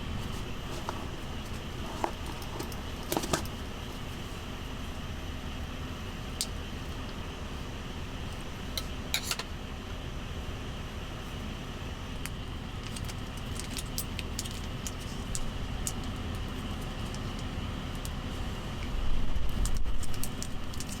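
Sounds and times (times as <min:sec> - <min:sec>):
steady low rumble: 0:00.0 - 0:21.0.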